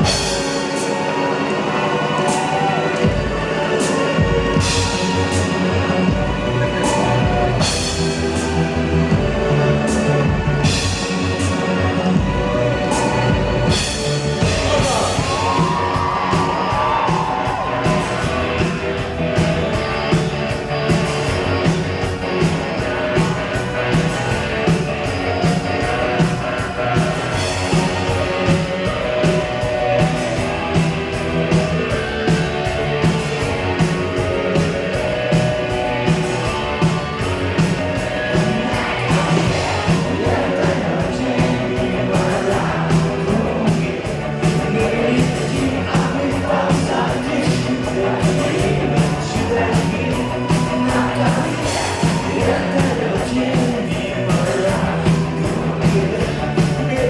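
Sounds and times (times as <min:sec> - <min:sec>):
crowd yelling: 0:00.0 - 0:57.0
live rock band playing: 0:00.0 - 0:57.0
drum beat: 0:12.2 - 0:57.0
person singing: 0:37.6 - 0:57.0.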